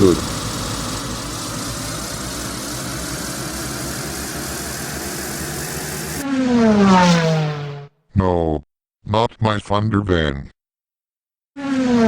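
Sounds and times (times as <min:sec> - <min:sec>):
vehicle engine running: 0:00.0 - 0:07.6.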